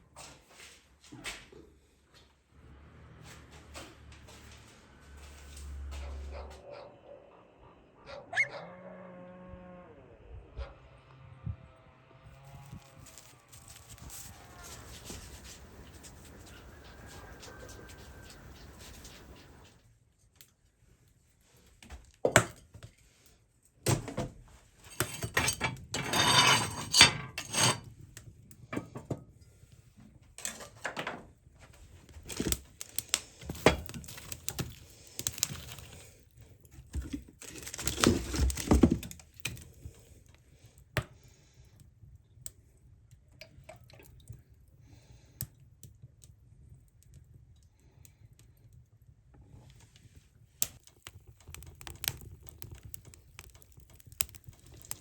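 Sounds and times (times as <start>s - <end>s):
scraping or rustling: 12.4s - 19.8s, 31.7s - 39.7s
dishes and utensils clattering: 24.9s - 27.9s.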